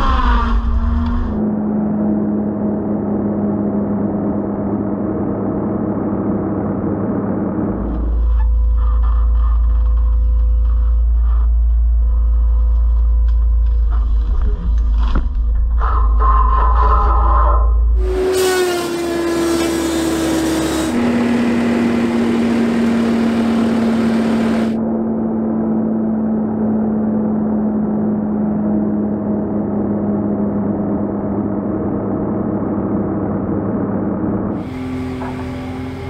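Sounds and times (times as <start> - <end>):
hydraulic cutting disc whine: 18.0 - 24.8.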